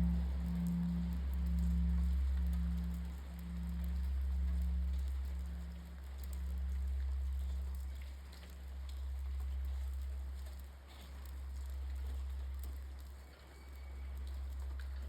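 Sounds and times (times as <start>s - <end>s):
temple bell ringing with deep hum: 0.0s - 9.6s.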